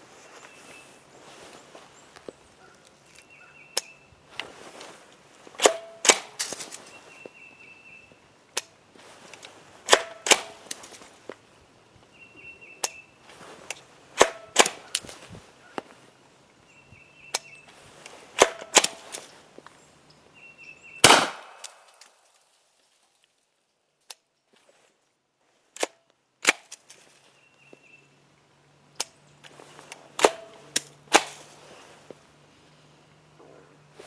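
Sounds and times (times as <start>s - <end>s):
gunshot crack: 21.0s - 21.8s.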